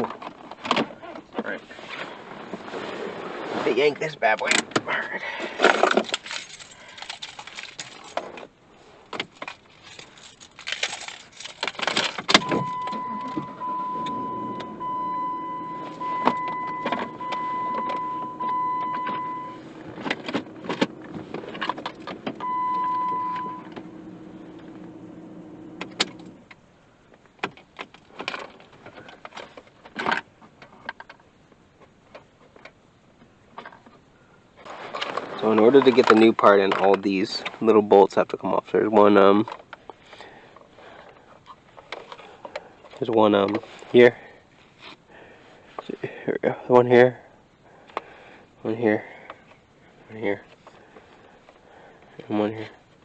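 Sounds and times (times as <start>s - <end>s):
steady electrical hum: 1.5s - 53.0s
electronic beeping tone: 12.4s - 19.6s, 22.4s - 23.7s.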